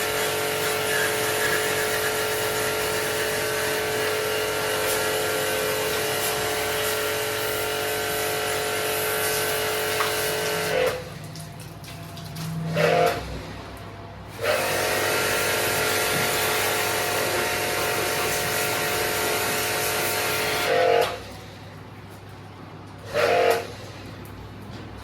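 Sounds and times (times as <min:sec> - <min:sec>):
loud machine hiss with tones: 0:00.0 - 0:10.7.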